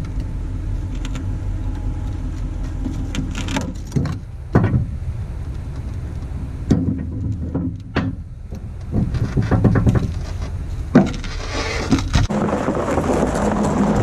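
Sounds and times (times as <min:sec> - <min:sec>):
vehicle engine running at low revs: 0:00.0 - 0:11.0
sharp knocks and clunks: 0:02.7 - 0:05.0, 0:06.6 - 0:12.4.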